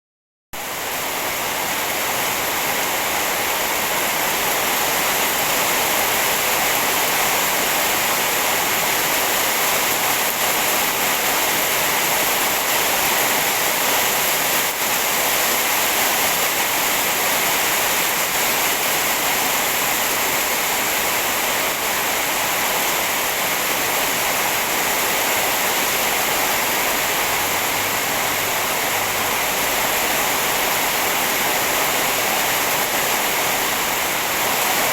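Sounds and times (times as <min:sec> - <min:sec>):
heavy rain falling: 0:00.6 - 0:34.9.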